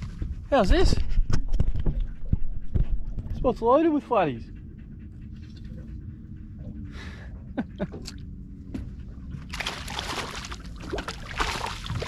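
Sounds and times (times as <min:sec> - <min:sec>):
water splashing at boat side: 0:09.5 - 0:12.0.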